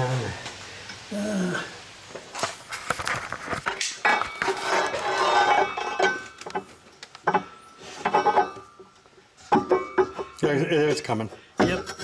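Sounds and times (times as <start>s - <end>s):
metal scraping with faint ring: 2.8s - 10.4s.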